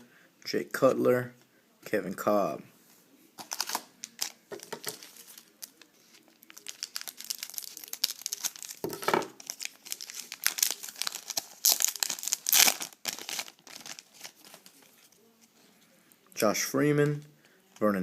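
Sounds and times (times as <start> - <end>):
wrapper tearing and crinkling: 3.4 - 14.8.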